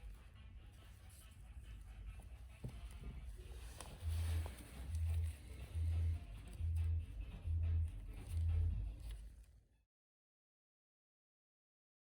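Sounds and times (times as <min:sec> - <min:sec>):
background music with deep bass: 0:03.4 - 0:09.2.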